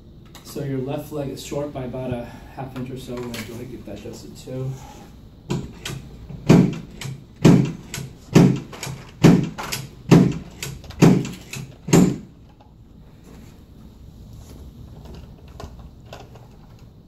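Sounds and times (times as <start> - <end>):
adjusting table thudding: 5.5 - 12.3.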